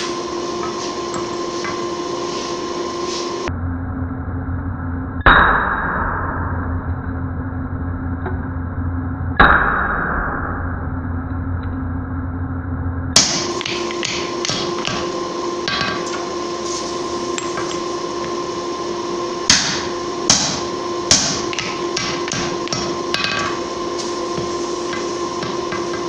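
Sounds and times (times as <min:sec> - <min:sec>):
hammer striking steel on anvil: 0:00.0 - 0:02.0, 0:13.2 - 0:18.5, 0:19.4 - 0:26.0
steady hum: 0:00.0 - 0:26.0.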